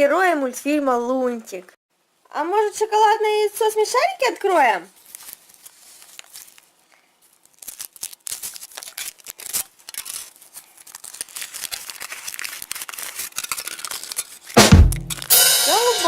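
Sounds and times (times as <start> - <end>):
foil wrapper crinkling and tearing: 4.9 - 15.6.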